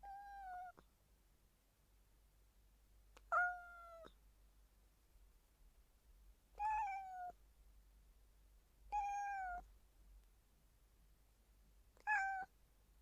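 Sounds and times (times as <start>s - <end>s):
cat meowing: 0.0s - 0.8s, 3.3s - 4.1s, 6.6s - 7.3s, 8.9s - 9.6s, 12.0s - 12.5s.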